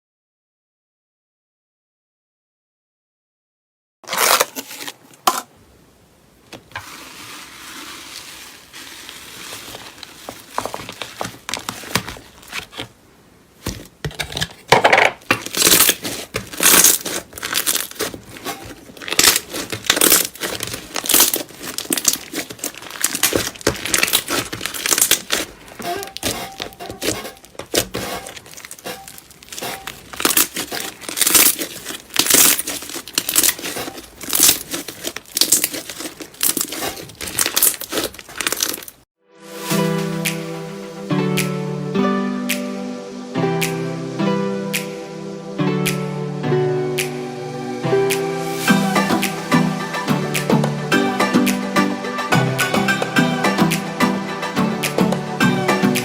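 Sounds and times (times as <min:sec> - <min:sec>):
soft hiss: 0:04.9 - 0:14.0
slime crackling and popping: 0:15.2 - 0:39.0.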